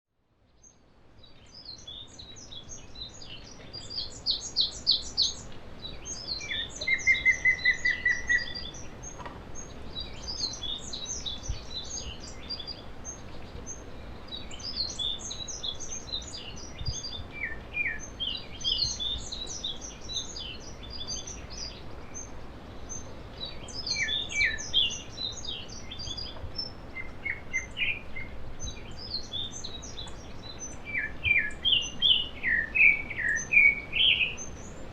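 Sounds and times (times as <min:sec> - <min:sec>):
birds chirping: 0:00.5 - 0:34.9.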